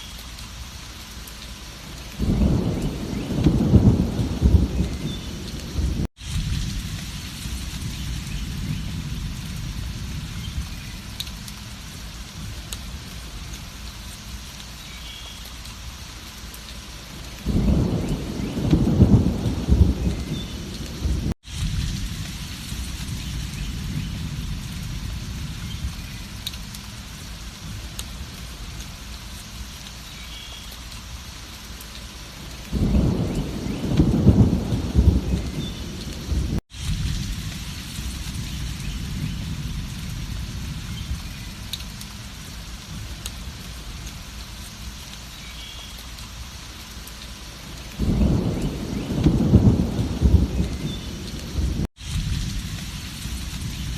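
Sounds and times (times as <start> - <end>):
heavy rain: 0.0 - 53.9
thunder rolling: 2.2 - 11.0, 17.4 - 26.1, 32.7 - 41.3, 48.0 - 53.9.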